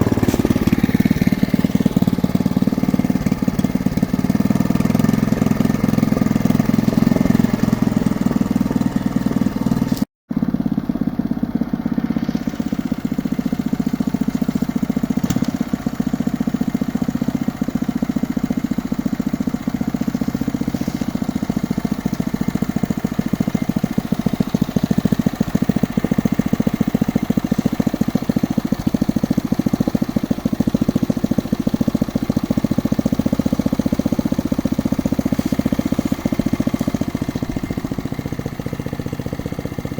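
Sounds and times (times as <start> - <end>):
drilling rig engine running: 0.0 - 10.0, 19.6 - 27.7, 33.1 - 39.9.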